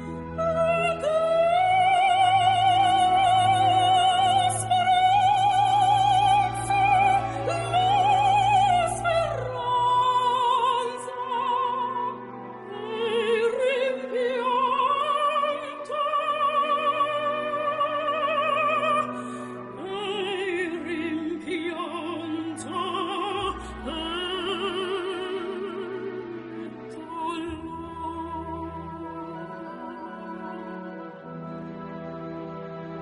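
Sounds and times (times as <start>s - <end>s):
opera singer with vibrato: 0.0s - 31.1s.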